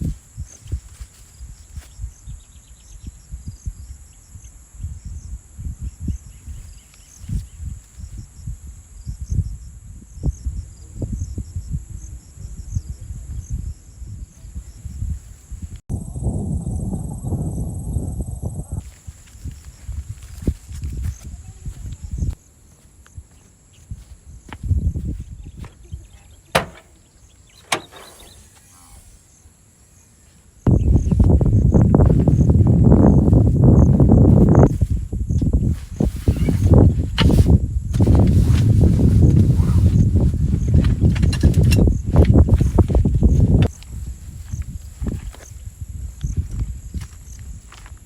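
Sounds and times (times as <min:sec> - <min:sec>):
crickets chirring: 0:00.0 - 0:48.0
low thuds: 0:26.5 - 0:28.7
sharp knocks: 0:26.6 - 0:27.0
rustling: 0:26.6 - 0:29.2
low bumps and rumbling: 0:30.7 - 0:45.3.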